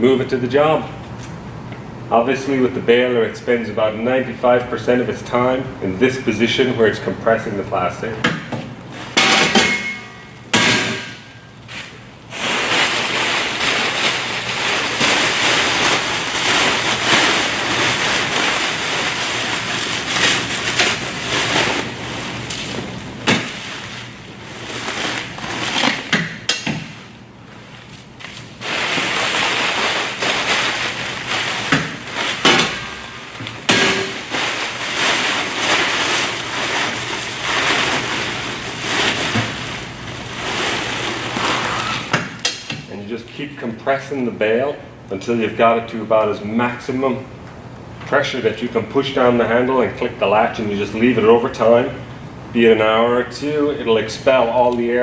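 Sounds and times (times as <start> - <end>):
plastic wrap crinkling: 11.1 - 42.4.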